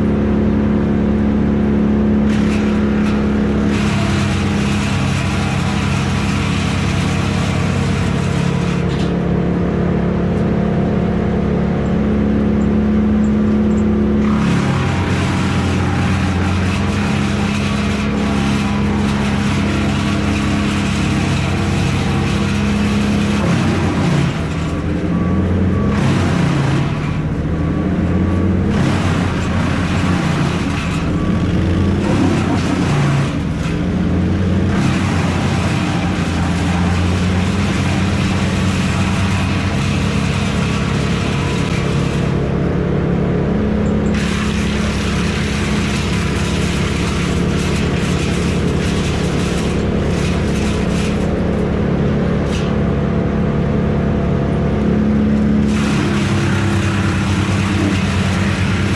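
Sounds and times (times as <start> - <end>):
large engine running: 0.0 - 58.9
loud rushing noise: 54.7 - 58.9.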